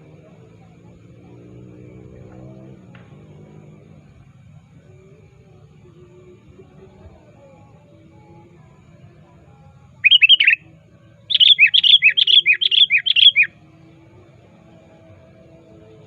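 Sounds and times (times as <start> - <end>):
bulbul calling: 10.0 - 10.6, 11.3 - 13.5.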